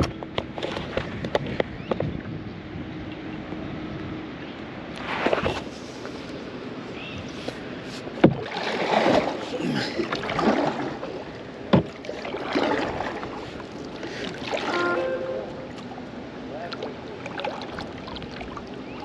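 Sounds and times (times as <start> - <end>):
paddle splashing in water: 0.4 - 1.4, 7.3 - 19.0.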